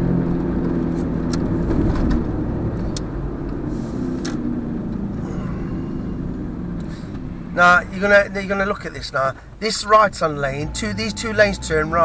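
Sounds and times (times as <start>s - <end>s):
car engine and road noise: 0.0s - 12.0s.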